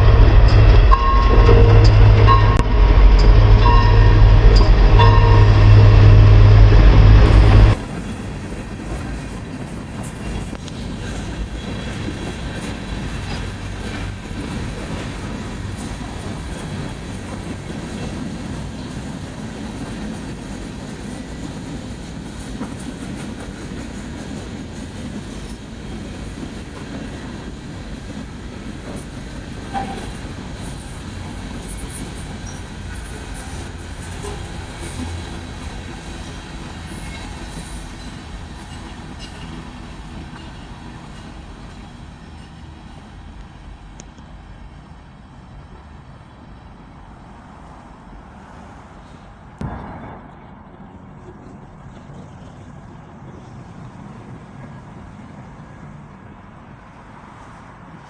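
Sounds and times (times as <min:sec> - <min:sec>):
locomotive pitched sound with rumble: 0:00.0 - 0:09.1
rail clicks: 0:00.0 - 0:44.5
freight train wheels rumbling on rails: 0:00.0 - 0:58.0.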